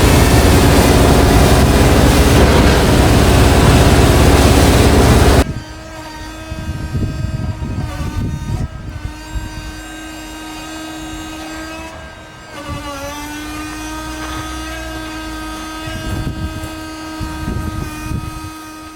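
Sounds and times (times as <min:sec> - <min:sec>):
low rumbling: 0:00.0 - 0:05.6
crane drive unit humming: 0:00.0 - 0:18.9.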